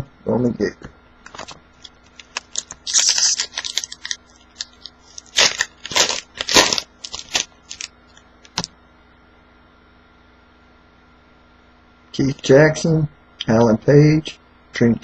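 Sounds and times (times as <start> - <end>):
card pack wrapper crinkling and tearing: 1.3 - 8.7.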